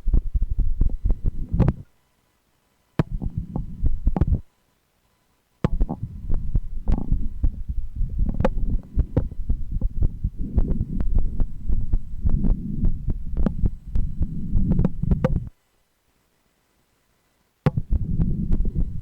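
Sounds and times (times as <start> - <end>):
heartbeat through a stethoscope: 0.0 - 1.9, 3.0 - 4.5, 5.7 - 15.5, 17.7 - 19.0.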